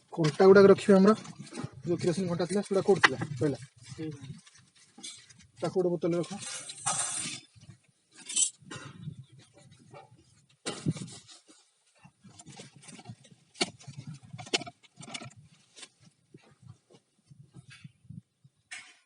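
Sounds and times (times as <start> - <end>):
low shuffling noise: 0.1 - 7.9, 9.0 - 14.5
bottles and metal knocking: 6.2 - 11.1.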